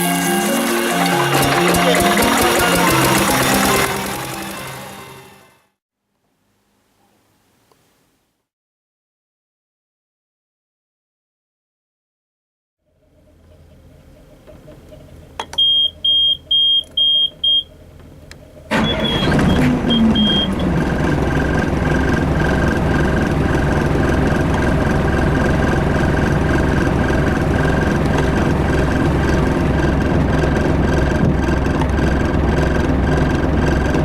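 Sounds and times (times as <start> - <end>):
diesel engine cranking and running: 0.0 - 5.4, 13.2 - 34.0
engine panel alarm beeps: 15.4 - 17.8, 18.7 - 20.6.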